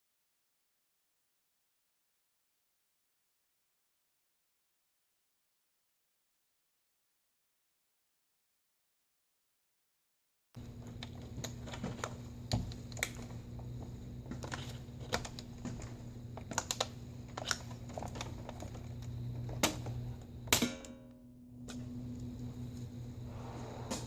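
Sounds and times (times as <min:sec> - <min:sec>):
low hum: 0:10.6 - 0:24.0.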